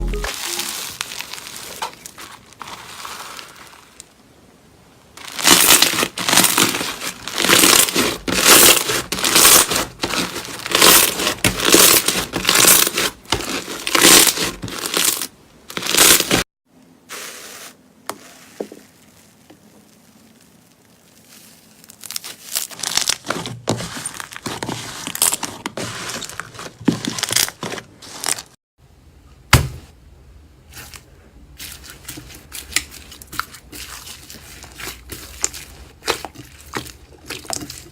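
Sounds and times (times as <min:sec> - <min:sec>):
slime squishing and crackling: 0:00.3 - 0:04.1, 0:05.2 - 0:16.4, 0:18.2 - 0:28.6, 0:31.6 - 0:37.9.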